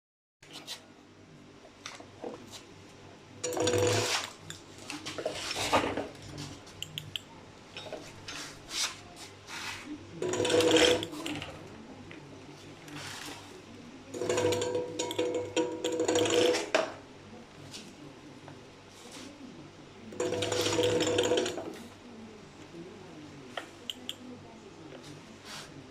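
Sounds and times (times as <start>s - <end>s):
motor grinding: 10.2s - 11.6s, 14.1s - 17.0s, 20.1s - 21.8s.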